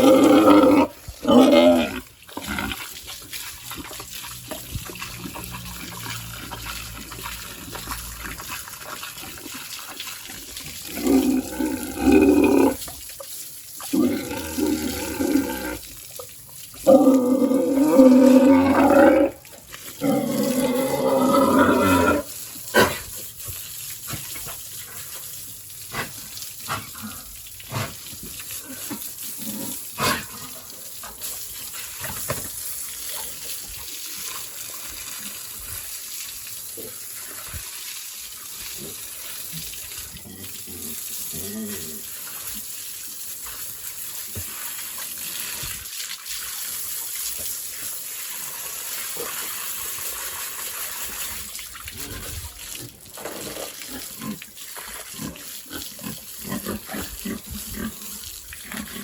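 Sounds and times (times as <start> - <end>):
water spraying from a hose: 0.0 - 59.0
pig squealing: 16.9 - 19.4.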